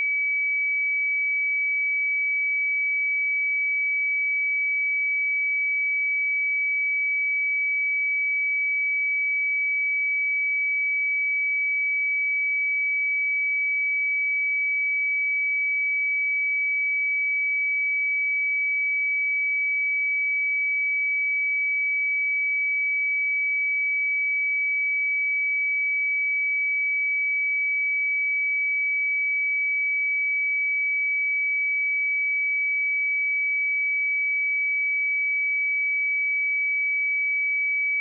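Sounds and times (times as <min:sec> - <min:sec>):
high-pitched sine test tone: 0:32.6 - 0:38.0.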